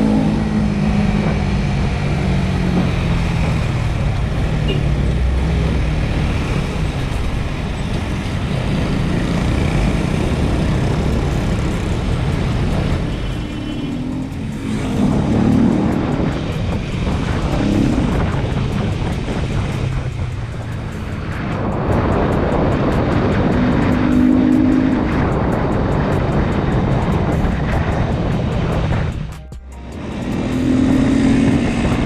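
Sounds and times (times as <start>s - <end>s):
motorcycle engine running: 0.0s - 32.0s
wind noise rushing: 0.0s - 32.0s.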